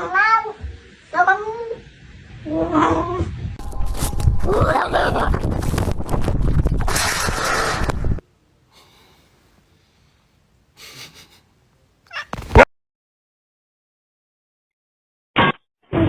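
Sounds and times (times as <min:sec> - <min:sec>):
cat crying: 0:00.0 - 0:01.8, 0:12.1 - 0:12.6.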